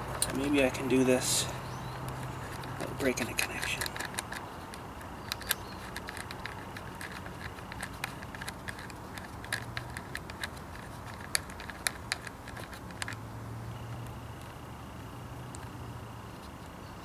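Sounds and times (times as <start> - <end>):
wiring connectors clicking and rattling: 2.0 - 13.2.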